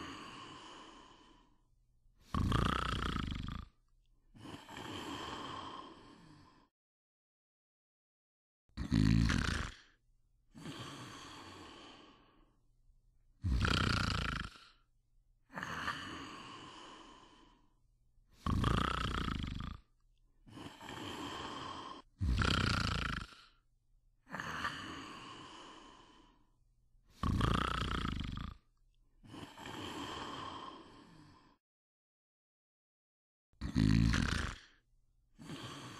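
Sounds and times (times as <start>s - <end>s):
soft out-breath: 0.0s - 1.7s, 4.3s - 6.7s, 15.5s - 18.4s, 24.3s - 26.6s, 29.2s - 31.6s
person snoring: 0.0s - 6.7s, 8.8s - 12.6s, 13.4s - 23.6s, 24.2s - 31.6s, 33.6s - 34.8s, 35.4s - 35.9s.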